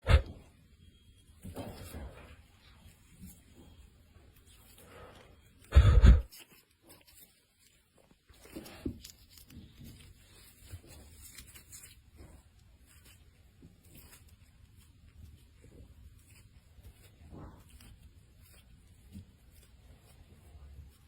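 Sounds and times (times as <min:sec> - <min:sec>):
faint scraping and clicking: 0:00.1 - 0:21.0
loud thump: 0:05.8 - 0:06.3.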